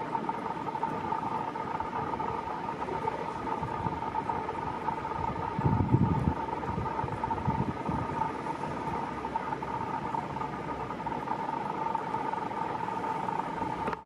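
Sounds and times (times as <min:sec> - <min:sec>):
high whine: 0:00.0 - 0:14.0.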